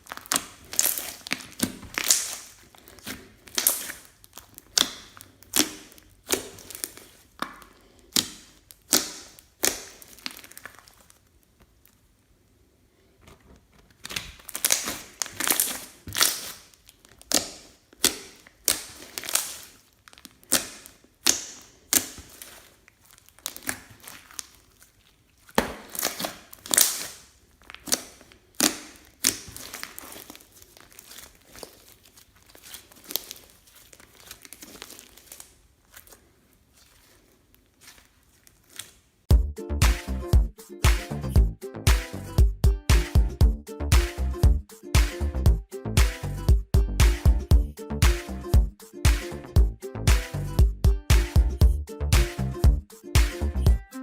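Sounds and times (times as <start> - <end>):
slime crackling pops: 0.0 - 11.0, 14.0 - 16.6, 25.5 - 30.3.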